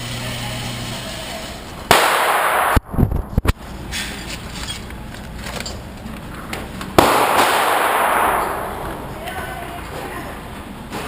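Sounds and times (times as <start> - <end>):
pistol shots with echo: 1.9 - 3.0, 7.0 - 9.2.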